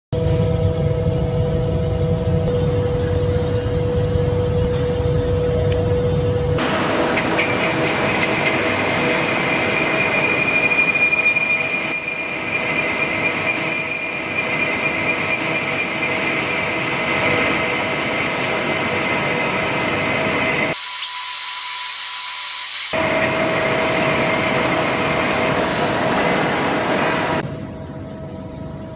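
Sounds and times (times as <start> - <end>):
metal lathe cutting with whine: 6.6 - 25.5.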